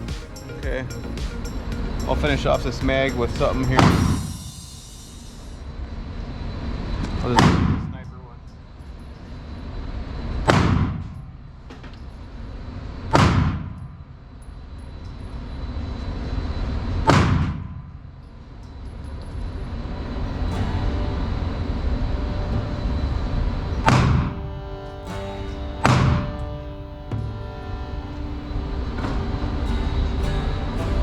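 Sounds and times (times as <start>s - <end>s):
steady rumble: 0.0s - 5.6s, 19.7s - 31.0s.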